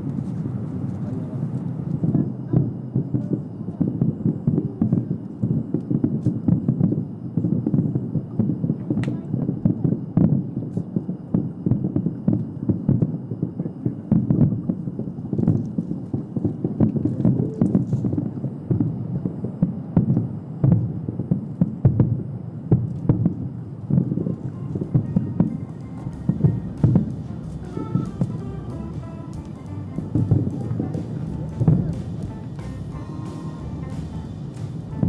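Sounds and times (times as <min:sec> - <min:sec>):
distant fireworks booming: 0:24.2 - 0:35.0
fireworks cracks: 0:24.3 - 0:35.0.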